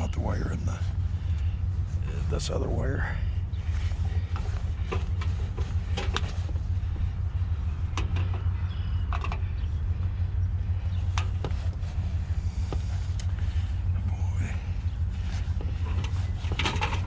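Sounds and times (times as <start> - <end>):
vehicle engine idling: 0.0 - 17.0
sharp clicks and knocks: 7.9 - 9.6, 15.6 - 17.0.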